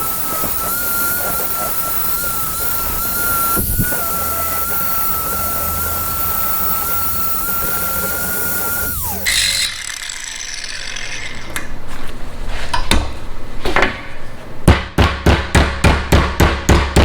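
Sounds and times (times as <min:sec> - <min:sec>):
hammer on sheet metal: 0:14.7 - 0:17.0.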